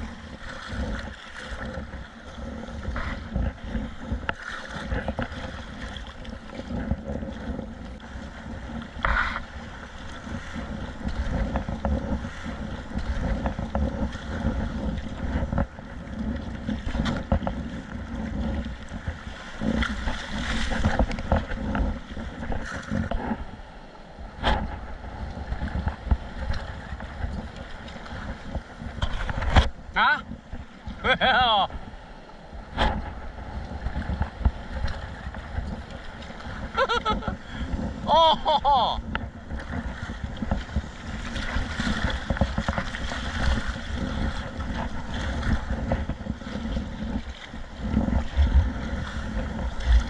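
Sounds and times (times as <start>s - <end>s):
water splashing around a kayak: 0.0s - 50.0s
wind rumble on microphone: 0.0s - 50.0s.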